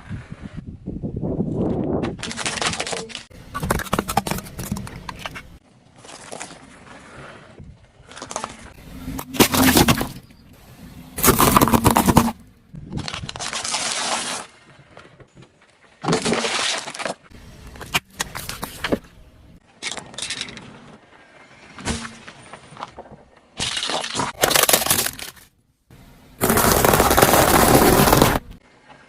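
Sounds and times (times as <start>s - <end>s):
car tyre crushing crunchy objects: 2.2s - 6.6s, 8.1s - 14.5s, 23.7s - 25.5s, 26.4s - 28.6s.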